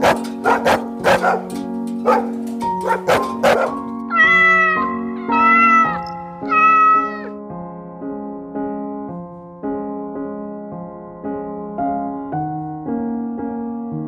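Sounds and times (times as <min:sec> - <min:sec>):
dog barking: 0:00.0 - 0:03.9
soft background music: 0:00.0 - 0:14.0
cat meowing: 0:04.1 - 0:07.4.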